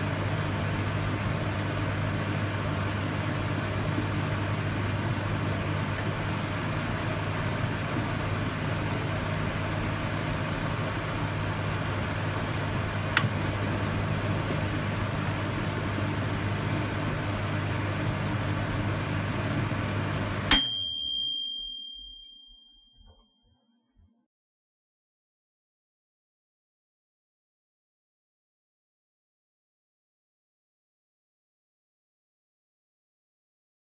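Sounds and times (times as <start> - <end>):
microwave oven humming: 0.0 - 22.7
microwave bell ding: 20.4 - 23.3.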